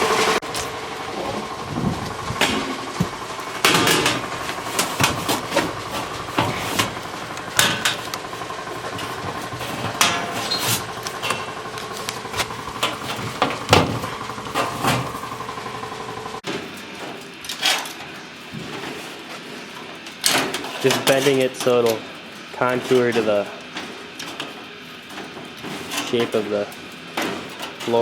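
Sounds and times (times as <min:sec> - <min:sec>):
sheet metal clanking: 0:00.0 - 0:16.5
steady mechanical hum: 0:00.0 - 0:28.0.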